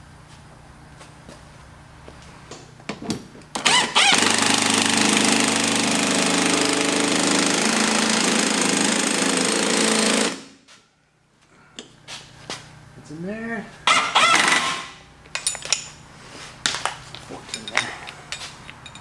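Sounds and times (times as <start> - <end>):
power wrench running: 3.5 - 10.6, 13.8 - 15.0.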